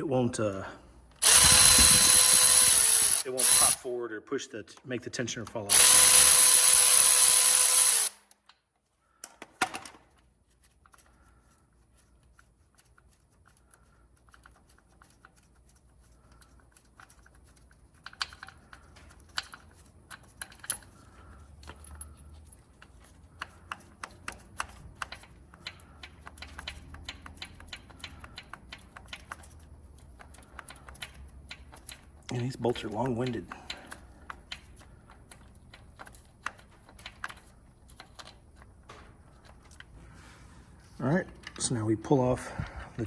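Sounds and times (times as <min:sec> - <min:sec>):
power tool whining: 0:01.2 - 0:03.8, 0:05.7 - 0:08.2.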